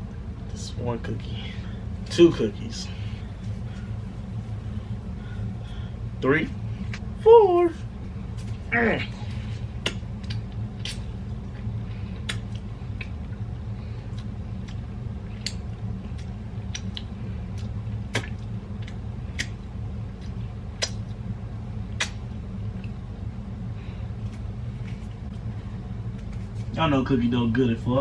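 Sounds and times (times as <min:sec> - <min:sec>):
steady low hum: 0:00.0 - 0:28.0
soft sticky squishes: 0:09.3 - 0:26.8.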